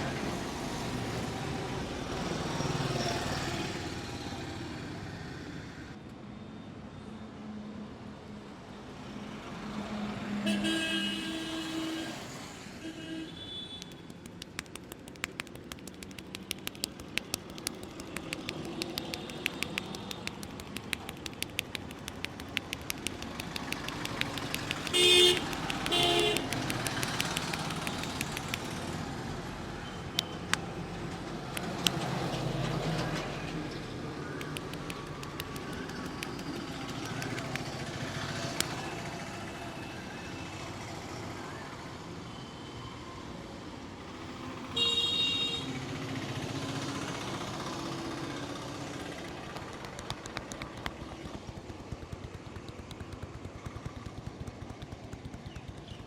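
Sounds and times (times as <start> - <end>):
street traffic: 0.0 - 56.0
quick sharp clicks: 13.7 - 28.9, 30.0 - 30.8, 31.4 - 32.4, 34.3 - 39.0, 49.0 - 56.0
vehicle horn blasts: 24.9 - 26.5, 44.8 - 45.7.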